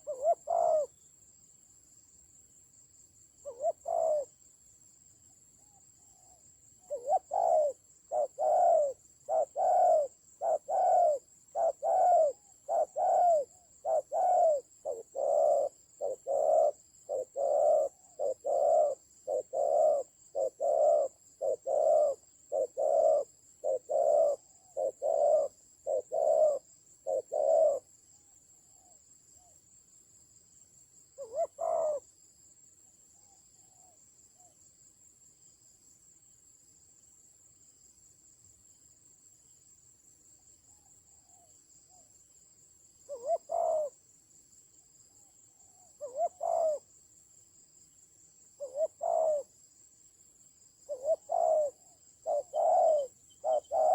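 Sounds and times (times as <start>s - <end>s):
dove cooing: 0.0s - 1.0s, 3.4s - 4.3s, 5.7s - 27.9s, 31.2s - 32.0s, 43.1s - 44.0s, 45.6s - 46.9s, 48.6s - 49.5s, 50.9s - 53.9s.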